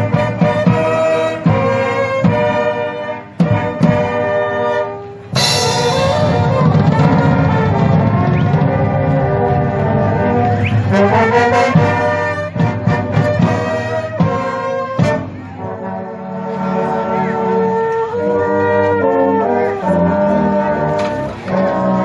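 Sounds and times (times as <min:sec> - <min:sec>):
marching band playing: 0:00.0 - 0:22.0
drum and cymbal hits: 0:05.2 - 0:11.0.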